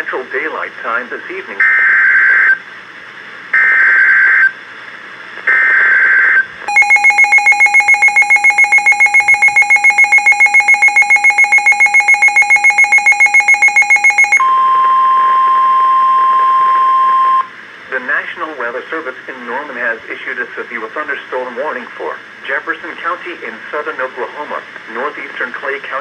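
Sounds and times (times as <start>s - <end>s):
pulsing two-pitch electronic alarm: 6.7s - 14.6s
steady single-pitch tone: 6.7s - 17.5s.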